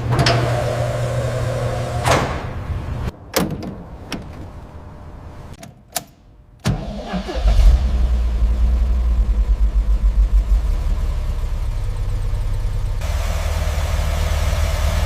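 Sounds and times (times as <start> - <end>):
car engine starting: 0.0 - 5.6, 6.6 - 15.0
car door shutting: 3.3 - 4.6.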